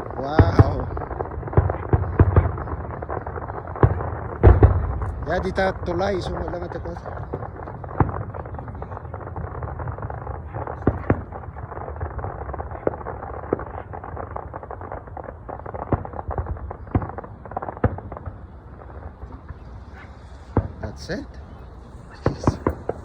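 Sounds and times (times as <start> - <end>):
fireworks bangs: 0.0 - 23.0.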